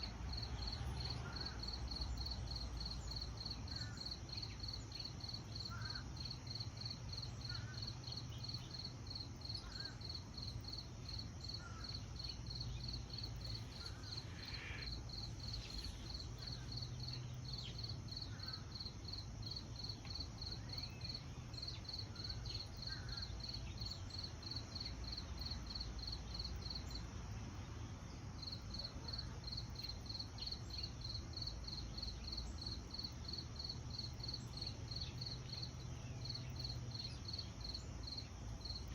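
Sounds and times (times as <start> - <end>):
cricket chirping: 0.0 - 38.9
high insect hum: 0.0 - 38.9
faint bird chirps: 11.5 - 18.7.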